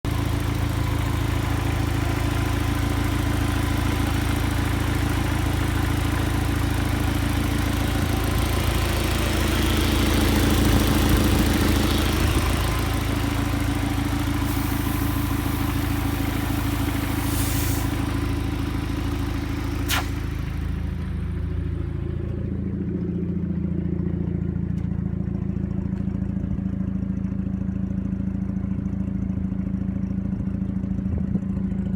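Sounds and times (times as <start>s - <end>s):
car engine running rough: 0.0s - 31.9s
broad hiss: 13.2s - 20.8s
sharp click: 19.9s - 20.6s.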